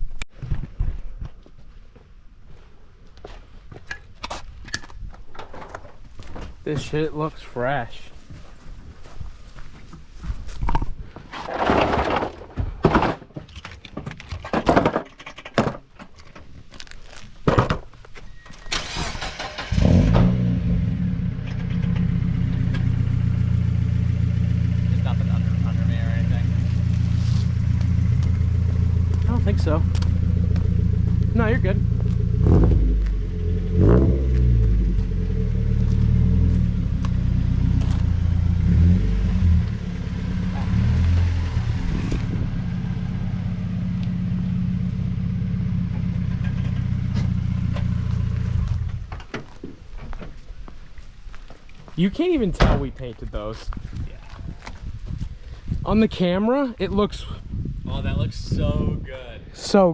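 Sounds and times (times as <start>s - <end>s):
knocks and clunks: 10.6s - 16.5s, 17.4s - 18.0s, 52.5s - 53.0s
car engine starting and idling: 18.7s - 49.3s.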